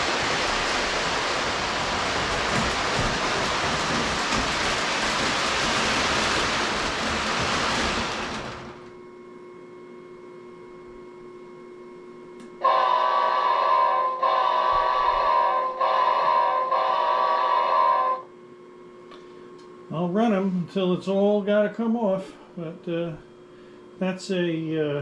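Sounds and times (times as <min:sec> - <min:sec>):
loud rushing hiss: 0:00.0 - 0:08.9
faint hum: 0:08.0 - 0:25.0
model locomotive horn blast: 0:12.6 - 0:18.2.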